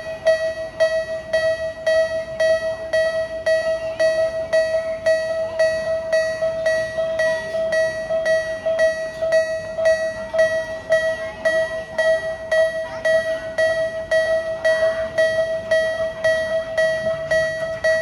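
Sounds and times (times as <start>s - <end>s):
railroad crossing warning bell: 0.0s - 18.0s.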